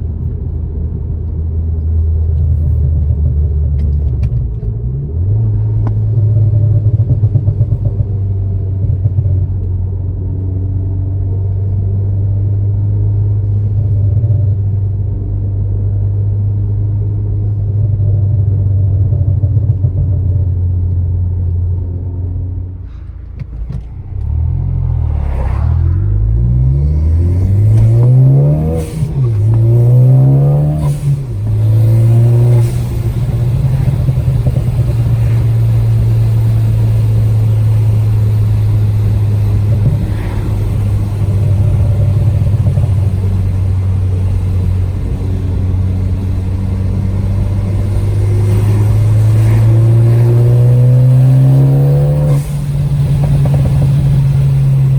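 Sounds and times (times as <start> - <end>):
car exhaust drone: 0.0 - 54.9
car accelerating through gears: 23.5 - 54.9.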